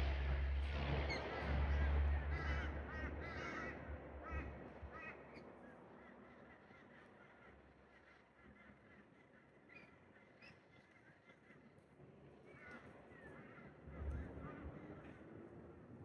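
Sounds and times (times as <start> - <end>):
low rumble: 0.0 - 5.0.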